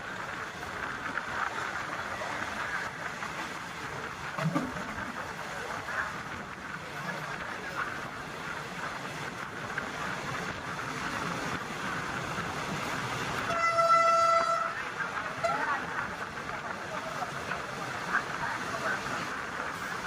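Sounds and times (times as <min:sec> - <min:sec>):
train noise: 0:00.0 - 0:20.0
train horn blast: 0:13.4 - 0:14.8.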